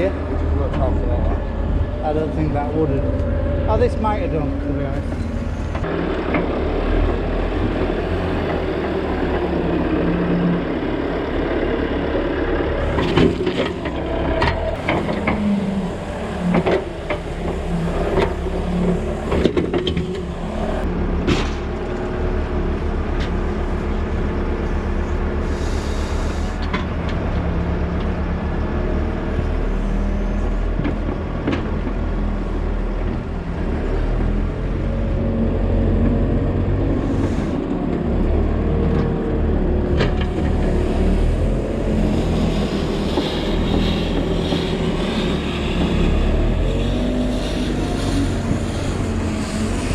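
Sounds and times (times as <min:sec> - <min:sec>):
tractor engine running: 0:00.0 - 0:29.8.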